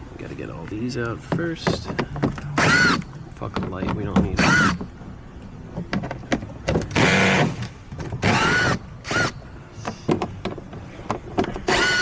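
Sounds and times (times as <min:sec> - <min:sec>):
power tool whining: 0:02.6 - 0:03.1, 0:04.4 - 0:04.8, 0:06.9 - 0:07.6, 0:08.2 - 0:09.4, 0:11.7 - 0:12.0.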